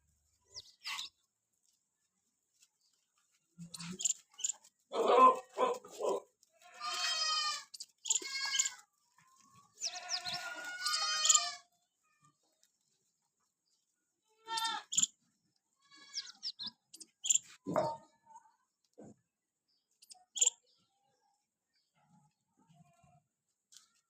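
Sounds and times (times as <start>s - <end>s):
goats bleating: 4.9s - 11.7s, 14.3s - 14.9s, 15.8s - 16.4s.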